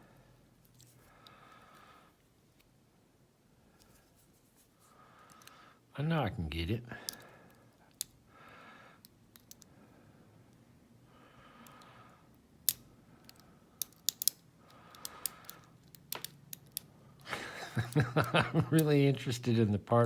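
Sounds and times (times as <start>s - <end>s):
lock pick clicking in lock: 9.0s - 9.7s, 12.6s - 16.9s.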